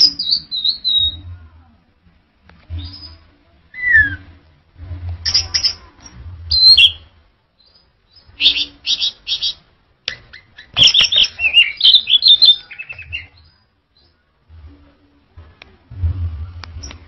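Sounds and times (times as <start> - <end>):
thrush singing whistled notes: 0.0 - 1.2, 6.5 - 9.6.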